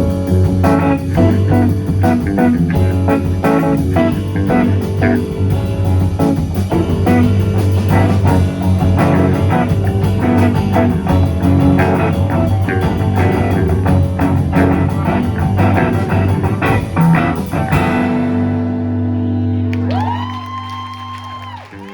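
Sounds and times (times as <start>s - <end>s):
rock band playing: 0.0s - 21.9s.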